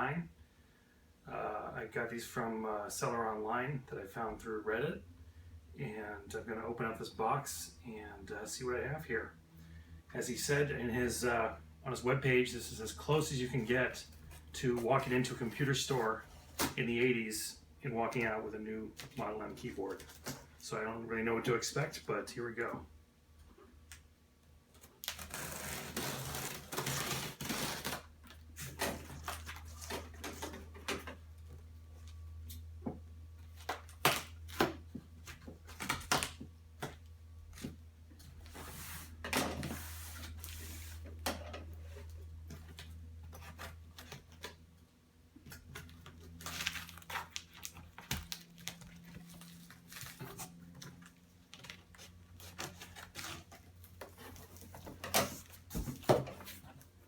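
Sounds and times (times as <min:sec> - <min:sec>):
cardboard tearing and rustling: 0:24.9 - 0:31.1, 0:45.5 - 0:56.8.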